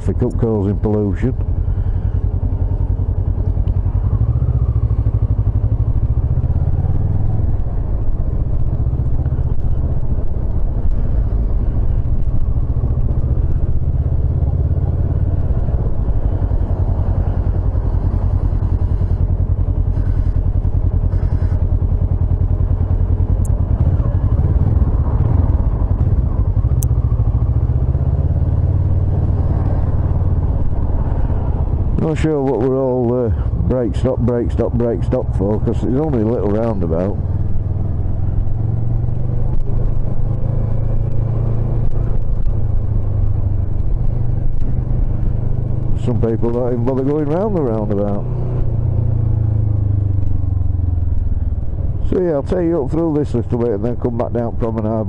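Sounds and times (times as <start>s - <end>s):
motorcycle engine running: 0.0s - 55.0s
wind rumble on microphone: 0.0s - 55.0s.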